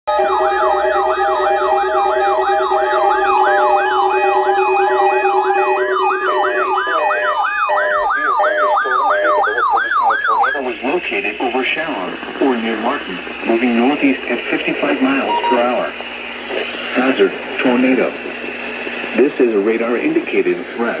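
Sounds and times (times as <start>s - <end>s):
electronic siren yelping: 0.1s - 10.8s, 15.2s - 15.9s
steady electronic tones: 0.1s - 10.8s, 15.2s - 16.0s.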